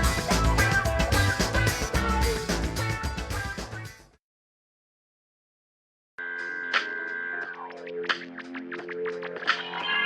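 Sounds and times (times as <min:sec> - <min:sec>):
electric rock music: 0:00.0 - 0:04.1.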